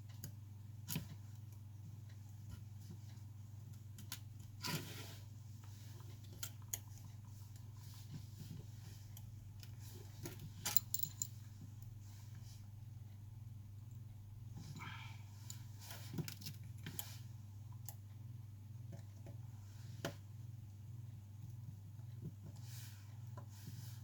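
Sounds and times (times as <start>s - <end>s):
steady low hum: 6.7s - 16.1s
small tools clicking and tapping: 10.6s - 11.3s.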